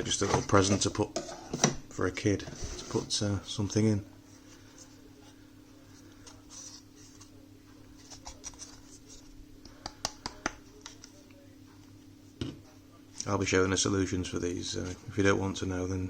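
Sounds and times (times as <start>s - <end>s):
low electrical hum: 0.0s - 16.0s
soft scraping and rubbing: 2.4s - 3.4s, 4.2s - 9.4s.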